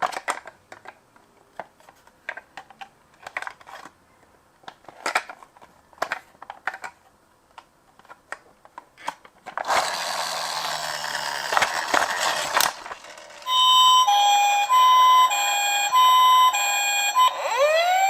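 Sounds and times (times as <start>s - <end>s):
plastic toy clicks and knocks: 0.0s - 1.0s, 1.6s - 3.9s, 4.6s - 13.5s
toy gear motor whirring: 9.6s - 13.5s, 16.6s - 18.0s
toy electronic siren wailing: 10.6s - 18.0s.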